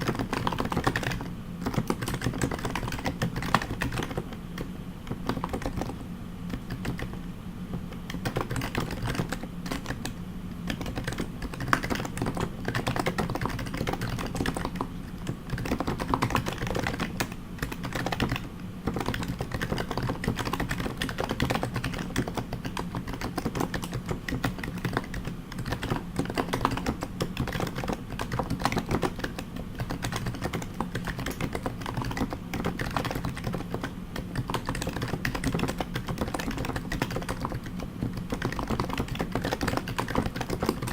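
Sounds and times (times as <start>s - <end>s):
fast keyboard typing: 0.0s - 7.2s, 7.9s - 40.9s.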